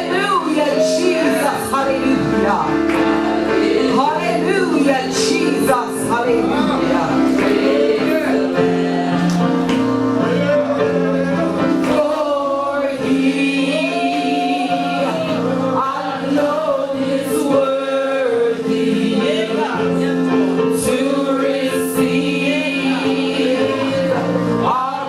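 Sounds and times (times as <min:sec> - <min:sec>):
gospel singing: 0:00.0 - 0:25.0
held instrumental chords: 0:00.0 - 0:25.0.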